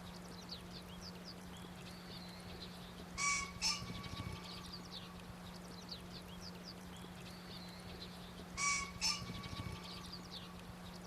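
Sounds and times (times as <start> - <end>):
small birds chirping: 0.0 - 11.0
steady low hum: 0.0 - 11.0
pheasant crowing: 3.2 - 4.6, 8.6 - 10.0.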